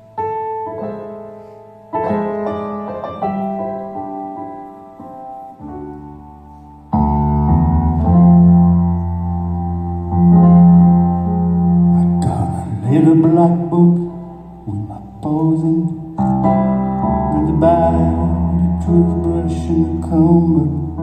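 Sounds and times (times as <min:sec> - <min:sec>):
piano chords: 0:00.0 - 0:21.0
deep bass notes: 0:06.9 - 0:21.0.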